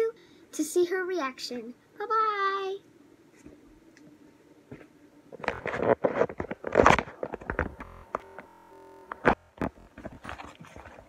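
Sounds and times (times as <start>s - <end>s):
crinkling handling noise: 4.7s - 11.0s.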